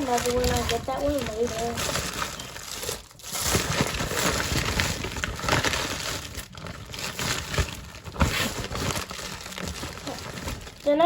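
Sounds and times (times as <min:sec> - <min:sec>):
rustling and crinkling handling: 0:00.0 - 0:11.0.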